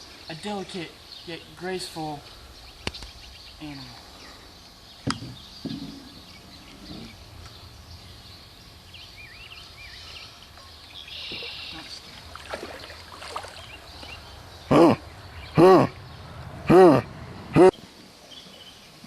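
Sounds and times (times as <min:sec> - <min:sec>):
paddle splashing: 0:11.3 - 0:14.3.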